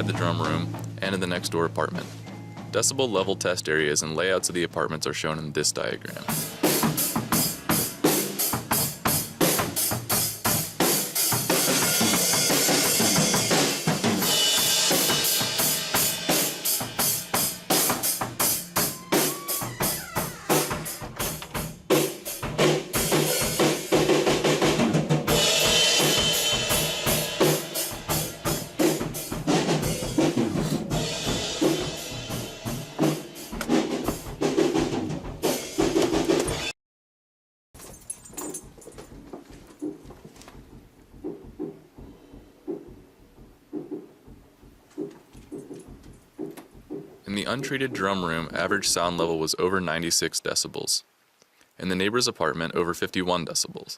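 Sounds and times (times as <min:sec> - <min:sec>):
drum kit playing a beat: 0:00.0 - 0:04.3, 0:06.1 - 0:36.7, 0:39.6 - 0:49.1.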